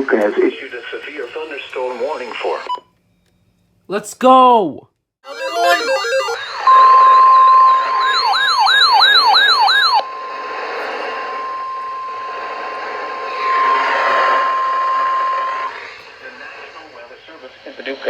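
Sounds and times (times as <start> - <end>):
wailing siren: 5.2 - 16.0
steady alert tone: 5.3 - 15.8.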